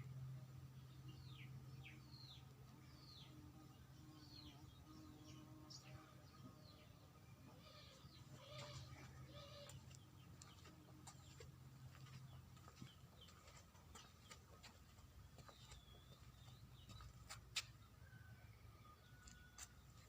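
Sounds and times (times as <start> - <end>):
low steady hum: 0.0 - 20.0
chicks peeping: 7.6 - 17.9.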